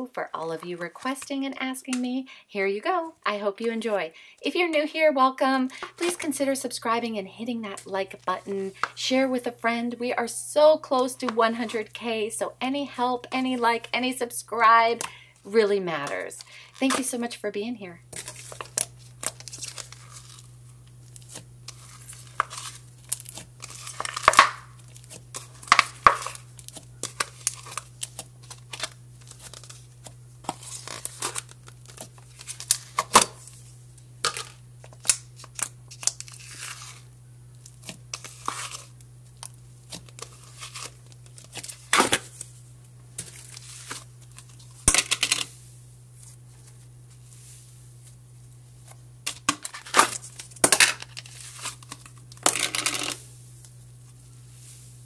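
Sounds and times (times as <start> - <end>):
steady low hum: 0.0 - 55.0
slime crackling and popping: 18.2 - 33.2, 34.9 - 42.0.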